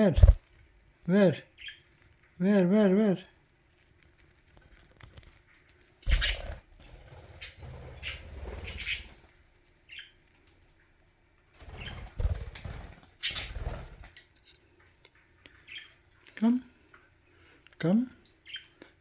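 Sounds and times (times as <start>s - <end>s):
budgie chirp: 0.0s - 3.6s, 6.1s - 6.6s, 7.3s - 9.2s, 18.4s - 19.0s
budgies fluttering and rustling: 0.0s - 16.5s, 17.1s - 19.0s.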